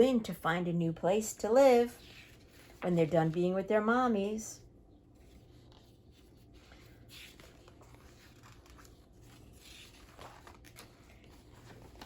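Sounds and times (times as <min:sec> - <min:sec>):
paper page turning: 0:05.2 - 0:12.0.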